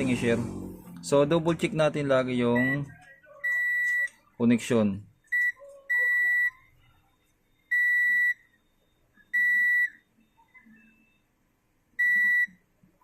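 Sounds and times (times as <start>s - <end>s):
multimeter continuity beeps: 2.5s - 4.3s, 5.0s - 11.3s, 12.0s - 12.6s.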